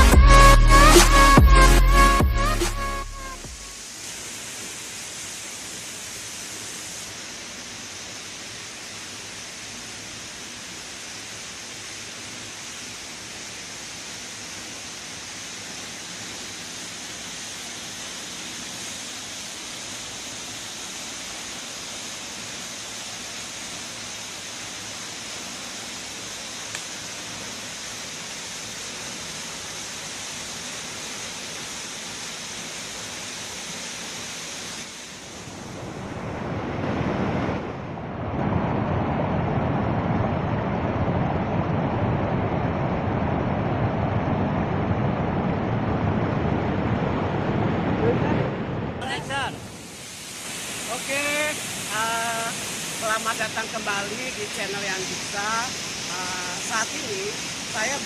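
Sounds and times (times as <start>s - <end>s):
waterfall rushing: 0.0s - 58.0s.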